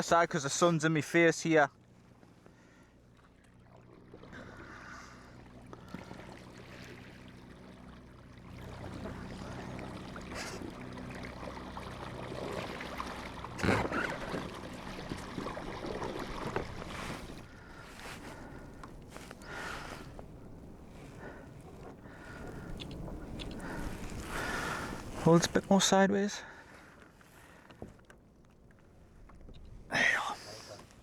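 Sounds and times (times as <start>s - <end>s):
trolling motor humming: 1.8s - 25.5s
water splashing against hull: 1.8s - 31.0s.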